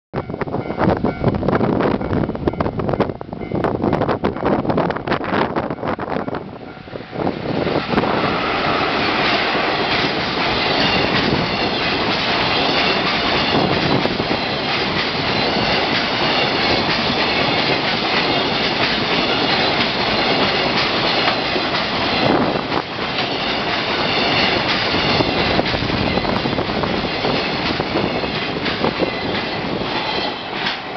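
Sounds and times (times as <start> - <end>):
freight train rumbling past: 0.2 - 30.9
wheels clacking over rail joints: 7.6 - 30.9.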